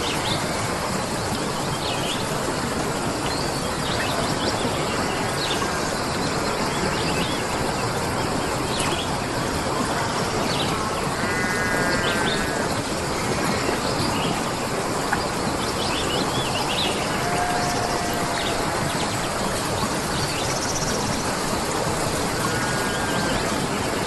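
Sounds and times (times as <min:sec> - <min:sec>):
flowing water: 0:00.0 - 0:24.0
wavering animal call: 0:17.0 - 0:19.8.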